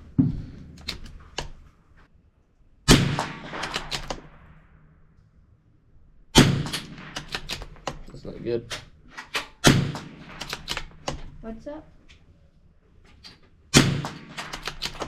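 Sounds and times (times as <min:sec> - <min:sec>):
rifle shots: 0:02.8 - 0:04.8, 0:06.3 - 0:11.4, 0:13.7 - 0:15.0
rifle bolt clicks: 0:03.5 - 0:04.3, 0:06.6 - 0:11.3, 0:14.0 - 0:15.0.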